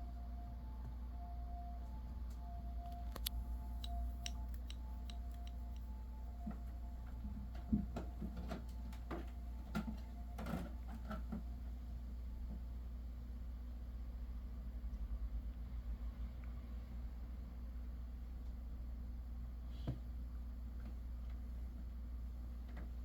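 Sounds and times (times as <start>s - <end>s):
steady low hum: 0.0s - 19.6s
light clicks and soft taps: 2.3s - 11.2s.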